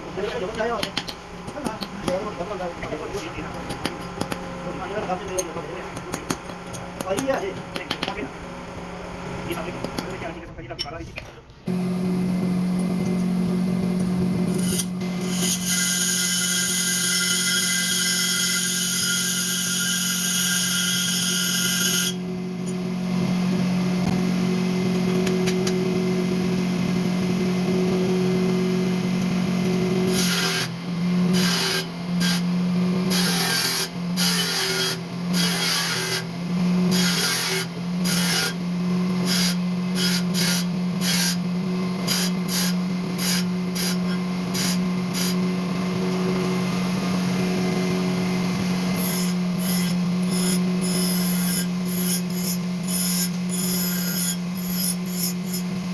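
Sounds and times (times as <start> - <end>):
metal rasping strokes: 14.5 - 22.2, 30.1 - 36.3, 36.9 - 38.6, 39.2 - 45.4, 49.0 - 55.8
electric motor humming: 21.6 - 55.9.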